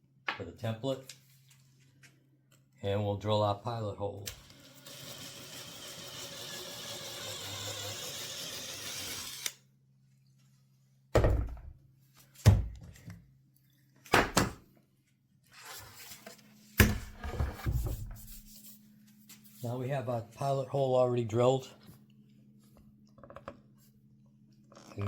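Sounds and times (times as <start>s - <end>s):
electric drill boring into wood: 4.3s - 9.6s
loud thunks: 11.2s - 11.8s.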